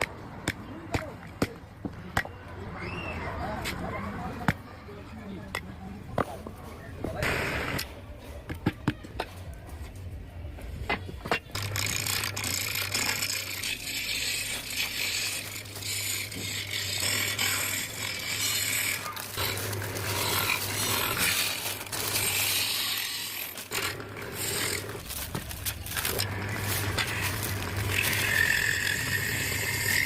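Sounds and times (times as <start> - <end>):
power tool scraping wood: 11.3 - 30.0.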